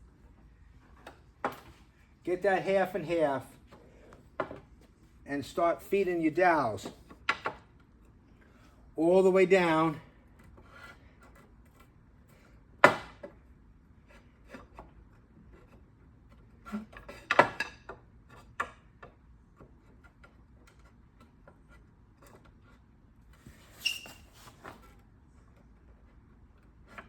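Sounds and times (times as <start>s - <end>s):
wooden dowels clacking: 6.8s - 8.1s, 15.8s - 22.6s.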